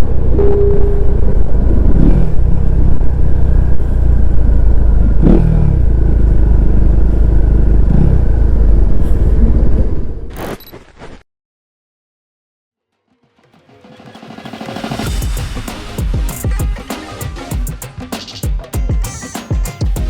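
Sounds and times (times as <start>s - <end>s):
motorcycle engine running: 0.0s - 10.2s.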